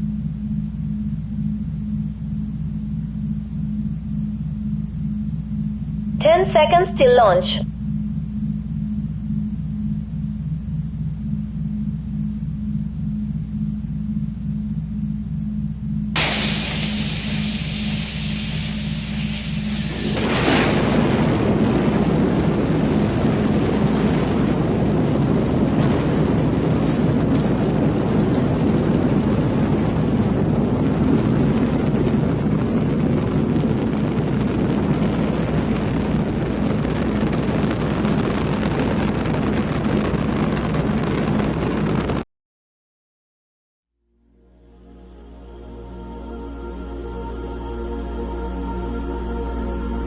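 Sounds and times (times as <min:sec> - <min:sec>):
constant low hum: 0:00.0 - 0:42.2
rocket engines rumbling: 0:06.2 - 0:07.6, 0:16.2 - 0:42.2.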